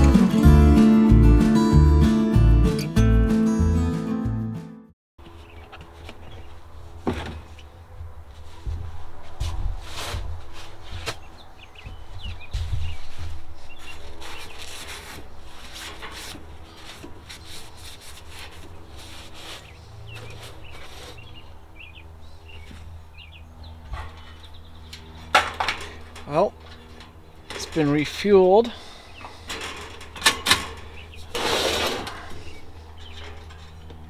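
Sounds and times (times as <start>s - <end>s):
rubbing knocking and clattering: 5.5s - 21.4s.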